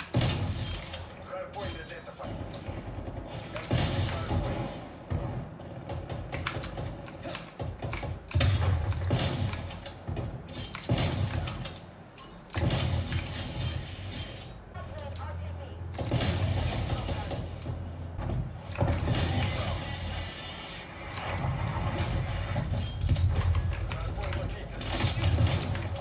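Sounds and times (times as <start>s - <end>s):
video game sharp clicks and knocks: 0.0s - 2.9s, 5.8s - 20.4s, 21.0s - 26.0s.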